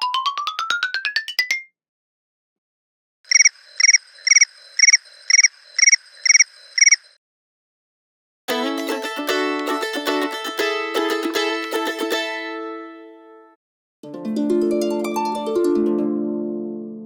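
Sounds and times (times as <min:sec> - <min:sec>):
cricket-like ringtone chirps: 0:03.3 - 0:07.2.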